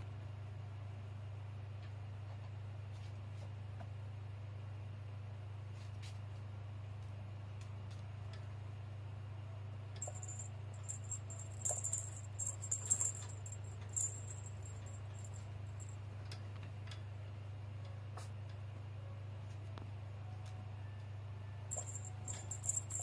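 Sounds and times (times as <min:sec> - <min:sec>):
steady low hum: 0:00.0 - 0:23.0
small metal bell jingling: 0:10.0 - 0:16.0, 0:21.7 - 0:23.0.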